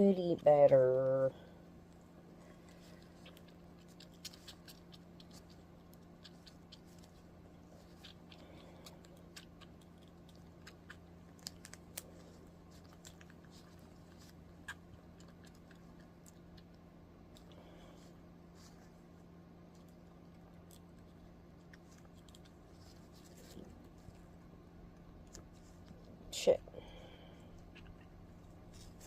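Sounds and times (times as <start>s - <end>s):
kitten suckling clicks and smacks: 1.9s - 17.6s.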